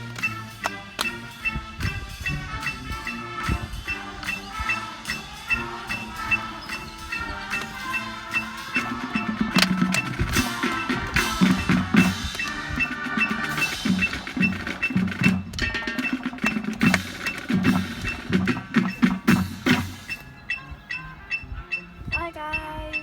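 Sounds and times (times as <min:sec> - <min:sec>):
pitched tones: 0:00.0 - 0:23.0
sharp percussion knocks: 0:00.0 - 0:23.0.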